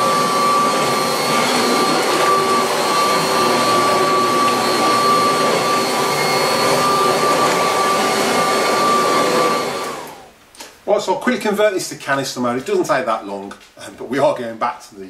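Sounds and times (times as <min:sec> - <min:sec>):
vacuum cleaner running: 0:00.0 - 0:10.4.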